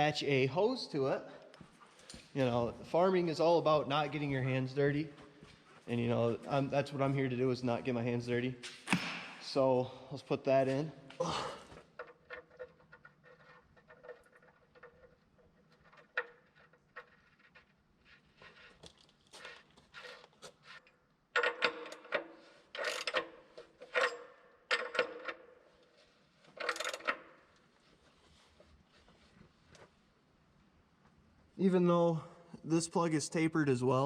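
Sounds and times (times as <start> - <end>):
metal fittings clinking and scraping: 12.0 - 27.2.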